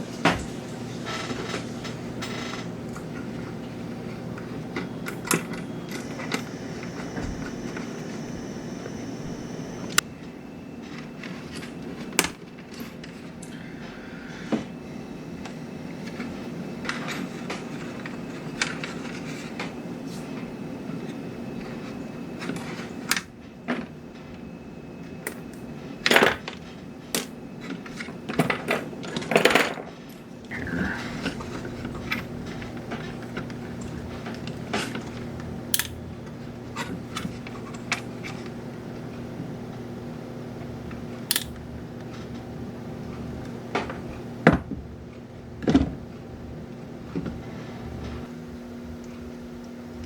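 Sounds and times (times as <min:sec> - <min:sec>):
steady low hum: 0:00.0 - 0:50.0
small hard parts clattering: 0:25.2 - 0:38.6
clicks and knocks of small parts: 0:41.3 - 0:41.6.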